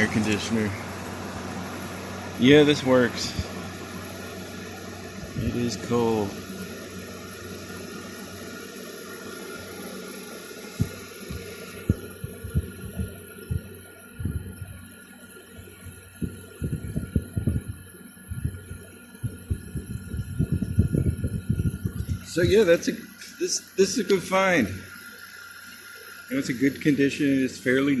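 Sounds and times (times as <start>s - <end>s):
air conditioner humming: 0.0s - 28.0s
low thumps: 10.8s - 14.8s, 15.8s - 22.3s.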